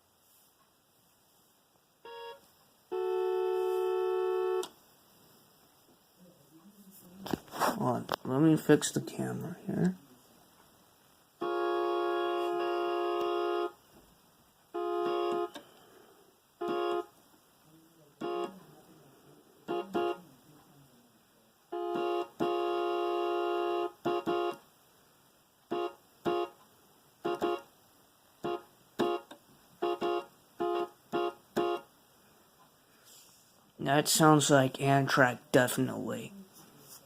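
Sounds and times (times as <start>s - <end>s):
keyboard chord horn blasts: 2.1s - 4.7s, 11.4s - 13.8s, 14.7s - 15.6s, 16.6s - 17.1s, 18.2s - 18.6s, 19.6s - 20.3s, 21.7s - 24.6s, 25.7s - 26.6s, 27.2s - 27.7s, 28.4s - 31.9s.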